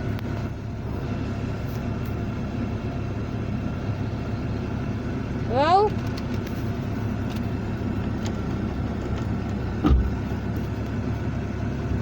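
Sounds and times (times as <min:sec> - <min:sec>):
vehicle engine idling: 0:00.0 - 0:12.0
single knock: 0:09.8 - 0:10.2.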